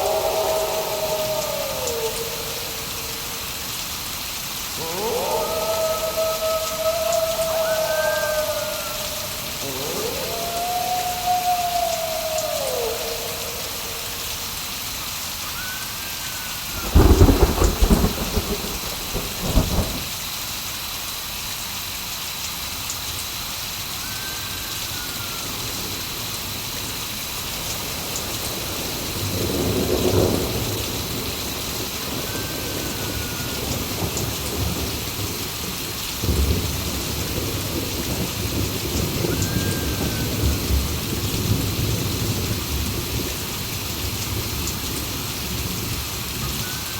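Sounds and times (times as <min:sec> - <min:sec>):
faint rising and falling call: 0:00.0 - 0:03.5, 0:04.8 - 0:14.7
rolling thunder rumble: 0:00.0 - 0:14.7, 0:16.6 - 0:20.2, 0:26.9 - 0:46.6
steady rain: 0:00.0 - 0:46.9
loud thunder cracks: 0:16.7 - 0:20.2.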